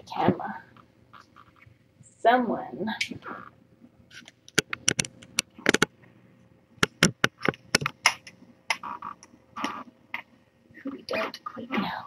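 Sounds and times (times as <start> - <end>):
camera being bumped: 4.1 - 5.9.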